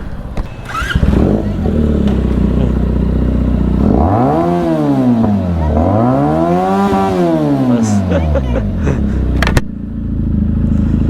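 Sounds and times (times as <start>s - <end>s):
motorcycle engine idling and revving: 0.0s - 11.0s.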